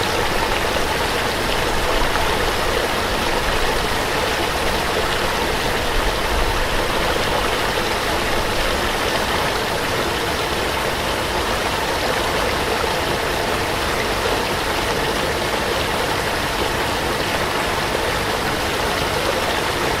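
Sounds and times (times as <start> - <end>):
waterfall pouring and splashing: 0.0 - 20.0.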